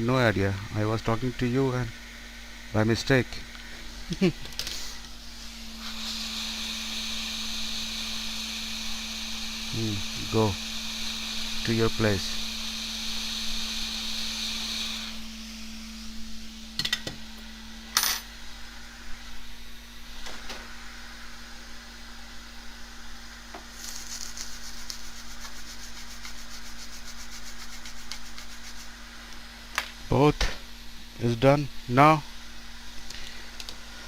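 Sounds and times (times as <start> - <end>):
steady low hum: 0.0 - 34.0
air hissing: 4.6 - 16.2.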